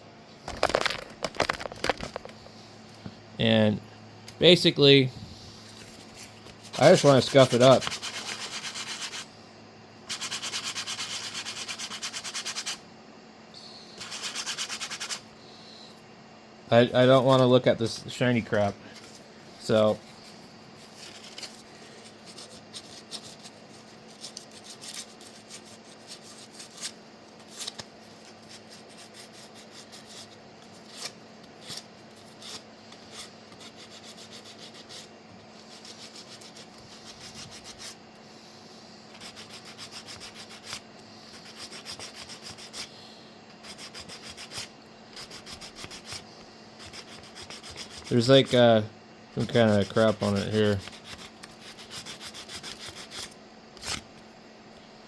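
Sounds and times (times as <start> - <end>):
sandpaper rubbing on plastic: 5.9 - 9.3, 10.1 - 12.8, 14.0 - 15.2, 20.9 - 38.0, 39.1 - 42.9, 43.6 - 46.2, 46.8 - 48.6, 49.4 - 54.0.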